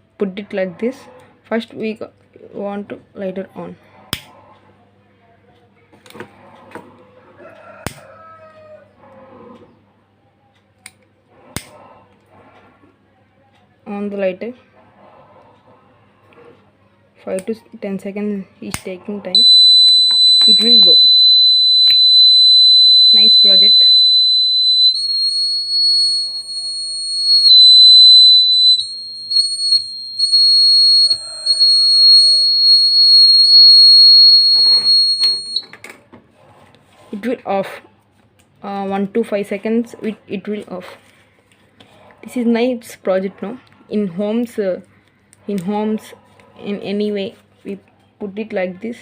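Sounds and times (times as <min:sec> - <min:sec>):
high-pitched alarm buzzer: 0:19.4 - 0:35.6.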